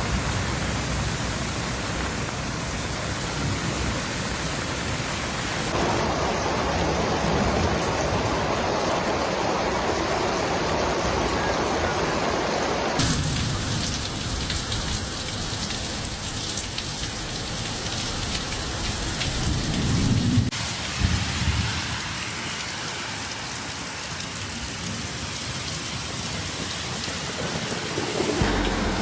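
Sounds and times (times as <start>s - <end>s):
heavy rain pouring: 0.0s - 29.0s
low rumble: 28.4s - 29.0s.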